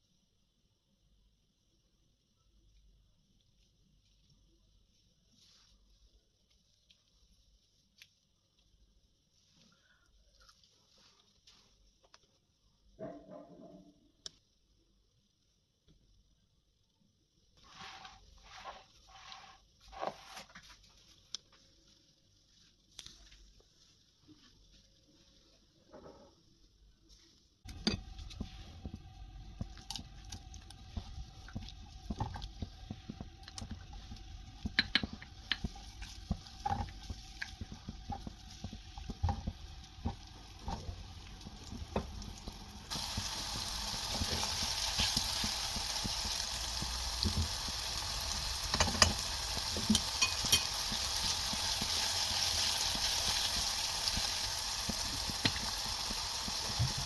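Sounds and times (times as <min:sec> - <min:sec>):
food sizzling in hot oil: 0:27.6 - 0:57.0
utensil knocking cookware: 0:49.8 - 0:51.0.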